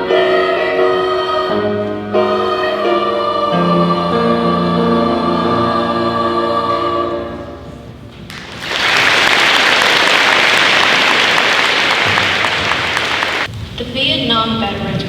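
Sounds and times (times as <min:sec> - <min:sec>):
choir holding final chord: 0:00.0 - 0:08.0
audience applause: 0:08.3 - 0:13.5.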